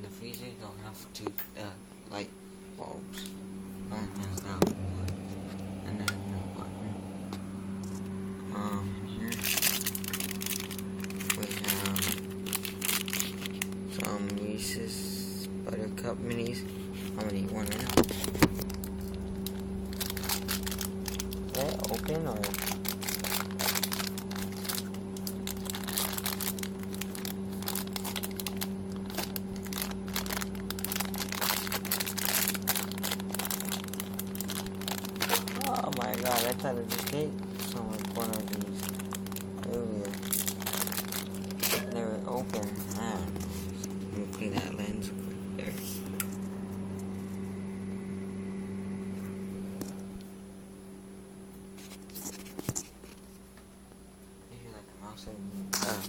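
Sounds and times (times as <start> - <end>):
steady low hum: 0.0 - 56.0
plastic bag crinkling: 9.2 - 14.4, 16.8 - 44.4.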